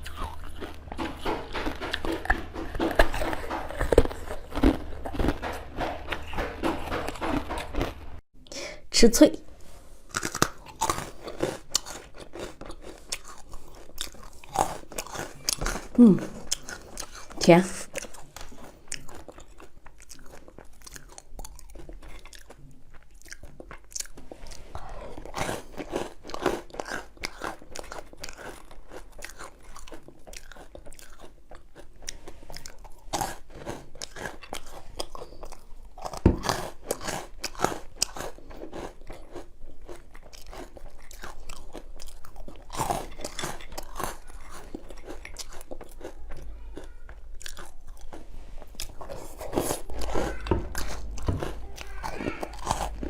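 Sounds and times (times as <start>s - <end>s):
crunchy food being chewed: 0.0s - 8.3s, 9.6s - 53.0s.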